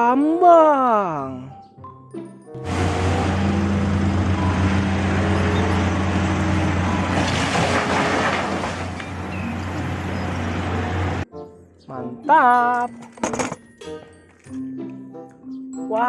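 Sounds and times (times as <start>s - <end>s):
truck engine running: 2.6s - 11.2s.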